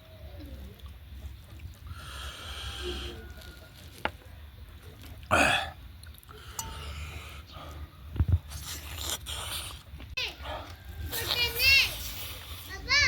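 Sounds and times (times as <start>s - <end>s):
chewing and mouth noises: 7.7s - 12.7s
breath or slurping burst: 8.5s - 9.9s, 11.1s - 12.8s.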